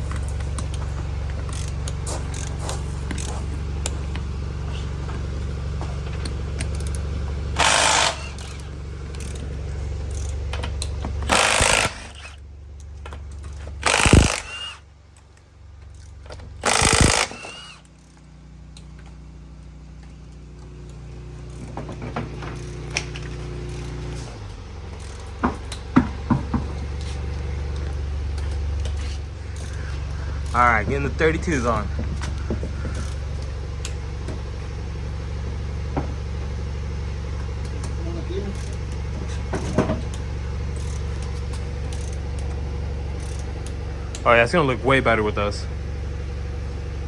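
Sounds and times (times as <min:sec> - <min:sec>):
impact wrench bursts: 0:00.0 - 0:05.0, 0:05.7 - 0:12.5, 0:13.4 - 0:14.9, 0:15.9 - 0:18.2, 0:28.4 - 0:34.7, 0:38.0 - 0:45.1
steady low hum: 0:00.0 - 0:47.0
sharp clicks: 0:10.2 - 0:14.8, 0:16.0 - 0:17.9.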